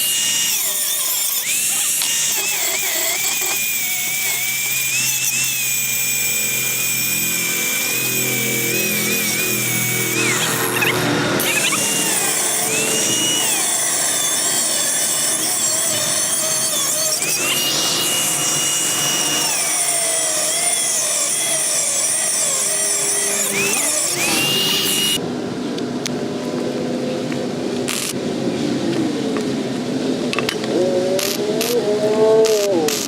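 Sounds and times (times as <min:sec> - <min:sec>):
power tool cutting with whine: 0:00.0 - 0:25.2.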